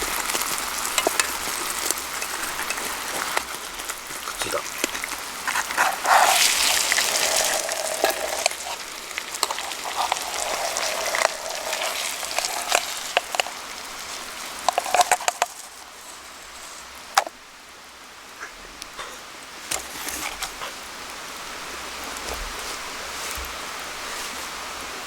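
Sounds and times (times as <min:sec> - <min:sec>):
food sizzling in a pan: 0:00.0 - 0:17.2
campfire crackles and pops: 0:00.0 - 0:17.4.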